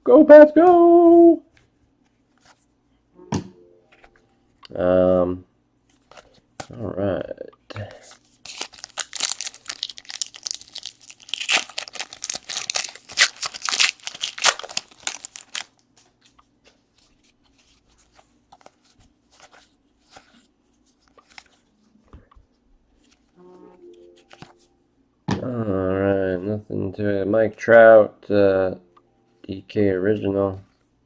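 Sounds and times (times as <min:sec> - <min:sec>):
cards clicking and rustling: 0:07.8 - 0:21.6, 0:24.2 - 0:24.6
card pack wrapper tearing: 0:08.4 - 0:15.8.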